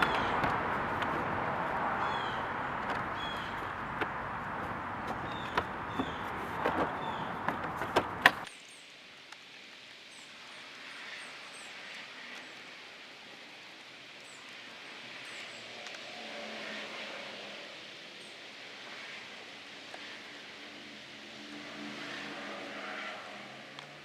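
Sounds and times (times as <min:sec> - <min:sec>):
clicks and knocks of hand tools: 0:00.0 - 0:08.5
steady background noise: 0:00.0 - 0:24.0.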